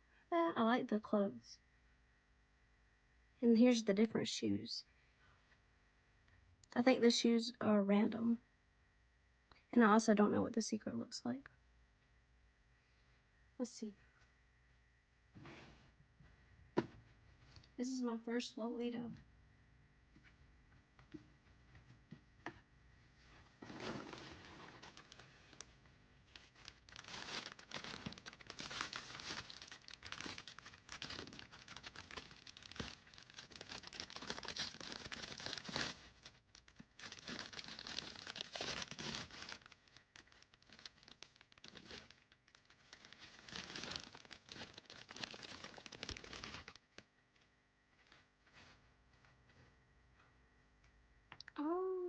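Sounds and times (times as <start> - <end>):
plastic packaging crinkling and tearing: 23.6 - 47.0.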